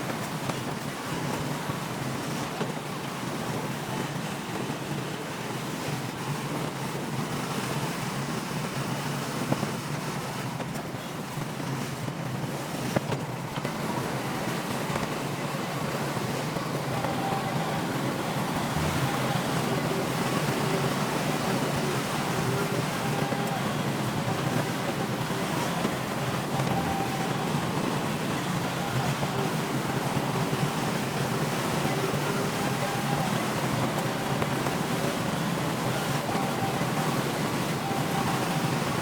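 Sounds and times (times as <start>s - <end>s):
bulldozer diesel engine: 0.0s - 39.0s.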